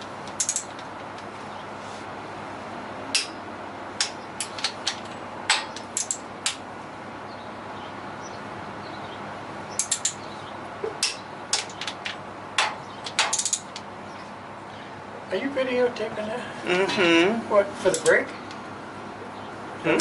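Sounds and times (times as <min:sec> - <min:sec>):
hand tools clinking on metal: 0:17.9 - 0:18.2.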